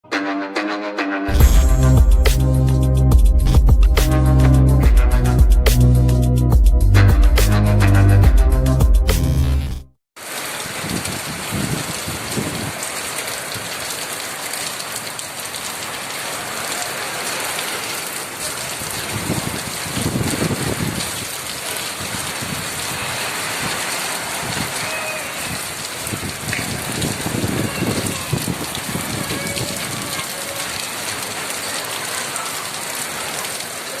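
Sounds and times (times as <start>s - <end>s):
music intro: 0.0s - 9.9s
heavy rain falling: 10.2s - 34.0s.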